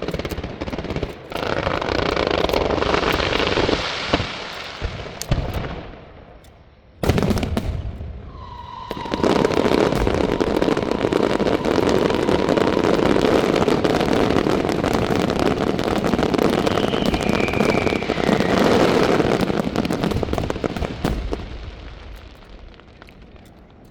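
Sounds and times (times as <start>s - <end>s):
fireworks crackling barrage: 0.0s - 23.9s
firework bang: 7.0s - 22.2s
thin whistling tone: 8.3s - 13.6s, 16.6s - 19.0s.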